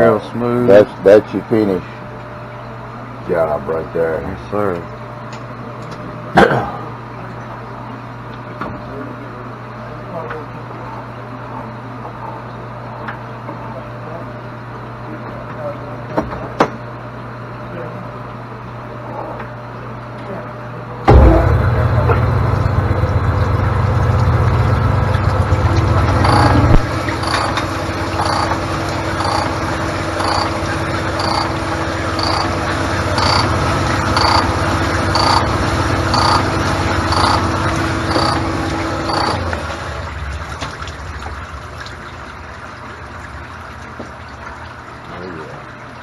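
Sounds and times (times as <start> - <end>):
honing machine motor hum: 21.1 - 40.2
hone stroking pulse: 26.2 - 27.6, 28.2 - 29.6, 30.2 - 31.6, 32.2 - 32.6, 33.2 - 33.5, 34.1 - 34.5, 35.1 - 35.5, 36.1 - 36.5, 37.1 - 37.5, 38.1 - 39.4.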